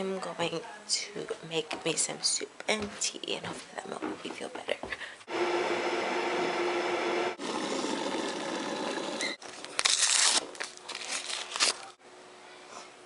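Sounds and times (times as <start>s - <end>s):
crinkling and tearing: 9.4s - 12.0s.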